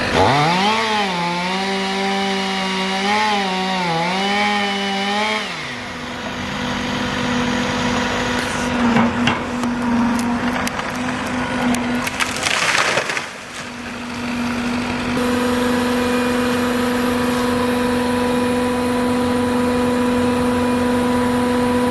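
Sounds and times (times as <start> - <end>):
engine droning: 0.0 - 21.9
crash of falling wood: 8.9 - 15.2
tree trunk cracking and splintering: 9.4 - 15.2.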